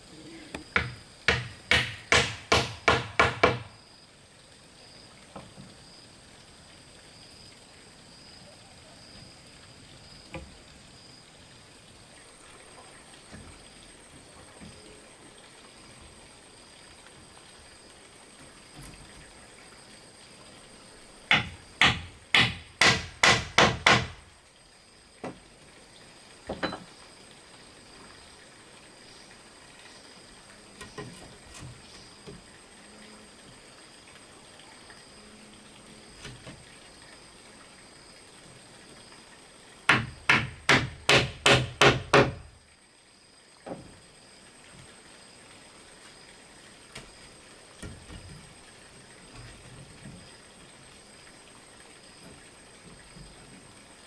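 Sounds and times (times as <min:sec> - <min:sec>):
hard strikes on bamboo: 0:00.8 - 0:03.7, 0:21.3 - 0:24.2, 0:39.9 - 0:42.4.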